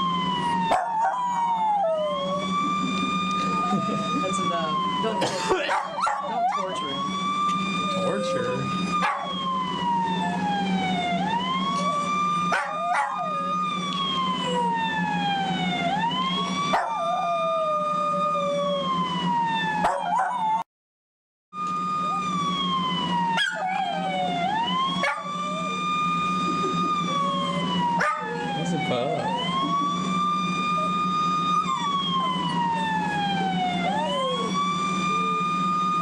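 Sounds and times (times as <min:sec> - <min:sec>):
police siren wailing: 0:00.0 - 0:20.7, 0:21.6 - 0:36.0
dog howling: 0:00.4 - 0:02.6, 0:05.6 - 0:09.5, 0:11.6 - 0:13.7, 0:19.8 - 0:20.6, 0:23.3 - 0:26.0, 0:26.8 - 0:28.6, 0:30.7 - 0:35.6.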